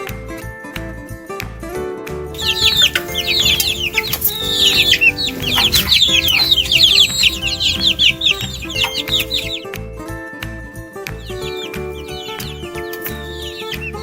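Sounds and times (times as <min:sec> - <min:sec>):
background music: 0:00.0 - 0:14.0
baby chicks peeping: 0:02.4 - 0:09.7, 0:11.0 - 0:14.0.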